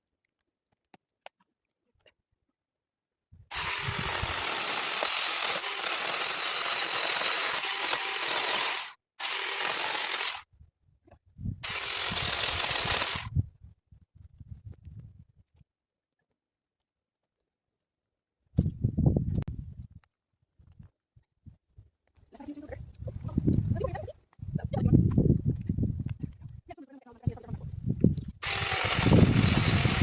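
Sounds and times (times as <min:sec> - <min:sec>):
handheld garden power tool running: 0:03.5 - 0:10.4, 0:11.6 - 0:13.3, 0:28.4 - 0:30.0.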